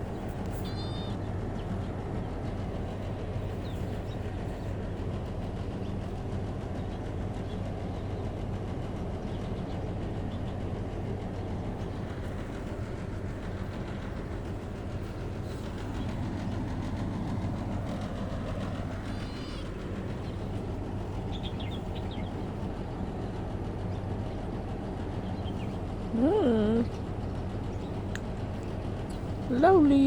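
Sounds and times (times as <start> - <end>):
low rumbling hum: 0.0 - 30.0
faint high chirps: 0.6 - 1.2.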